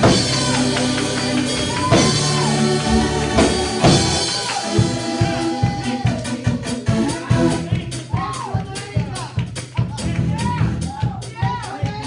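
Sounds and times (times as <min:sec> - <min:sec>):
keyboard chords: 0:00.0 - 0:08.7
bass: 0:00.0 - 0:12.0
drum kit with cymbal crashes: 0:00.0 - 0:12.0.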